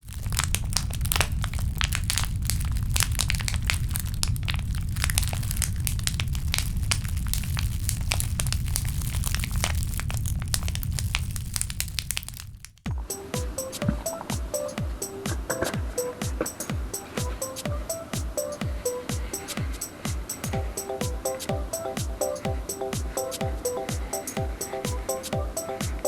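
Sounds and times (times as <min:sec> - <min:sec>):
steady low rumble: 0:00.0 - 0:12.6
plastic bottle crinkling: 0:00.0 - 0:12.8.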